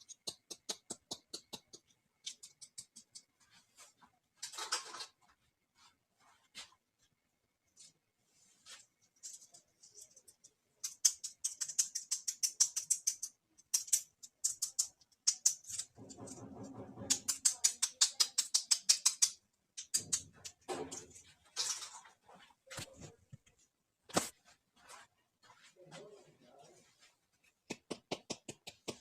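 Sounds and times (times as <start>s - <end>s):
plastic toy pieces clicking: 0.0s - 3.3s, 9.3s - 16.0s, 17.1s - 20.6s.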